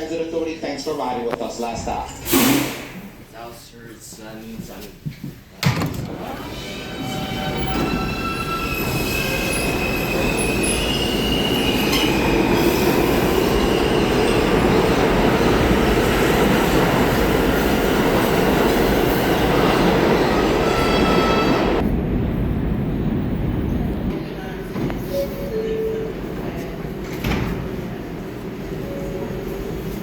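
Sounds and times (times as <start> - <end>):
subway train rumble: 0.0 - 30.0
wheels squealing on rails: 6.4 - 21.8.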